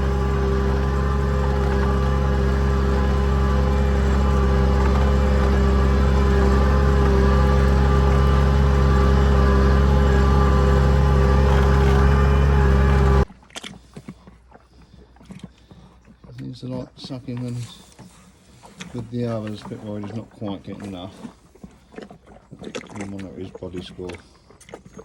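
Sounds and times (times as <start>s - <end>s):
tractor engine running under load: 0.0s - 13.3s.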